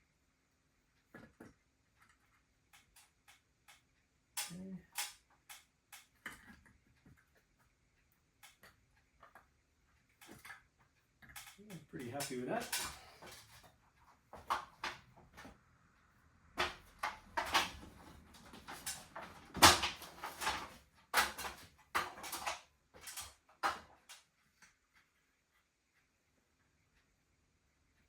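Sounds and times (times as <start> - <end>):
hard objects knocking and clattering: 16.6 - 24.1.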